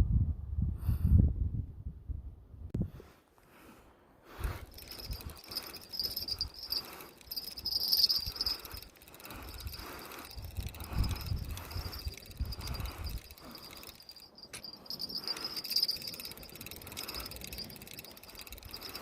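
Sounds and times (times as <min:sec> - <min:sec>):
insects trilling: 0:04.7 - 0:19.0.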